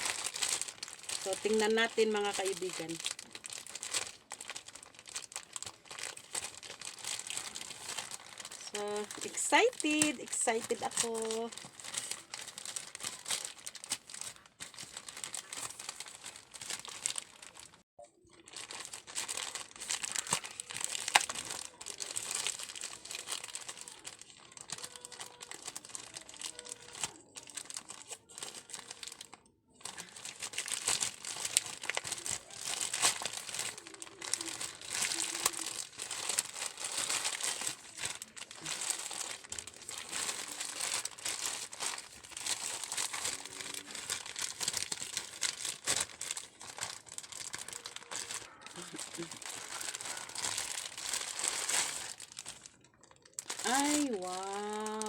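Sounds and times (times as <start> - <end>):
packaging crinkling and tearing: 0.0 - 55.0.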